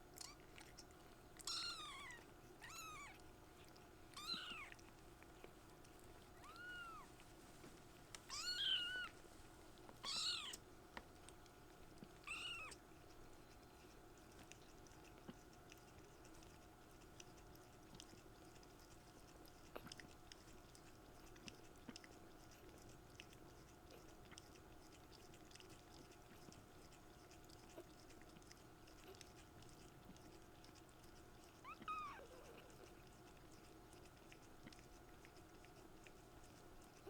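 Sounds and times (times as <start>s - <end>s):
kittens clicking and rustling: 0.1s - 37.0s
kitten mewing: 1.4s - 3.2s, 4.2s - 4.8s, 6.4s - 7.1s, 8.2s - 9.2s, 10.0s - 10.6s, 12.2s - 12.8s, 31.6s - 32.8s.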